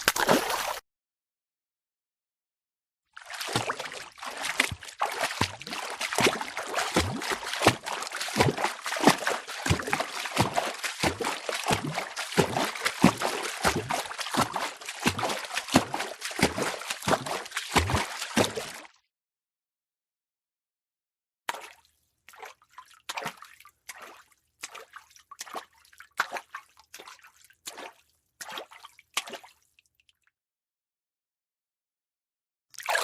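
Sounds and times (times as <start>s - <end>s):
footsteps wading through water: 0.0s - 0.8s, 3.2s - 18.9s, 21.5s - 29.7s, 32.8s - 33.0s
running water: 3.2s - 18.8s.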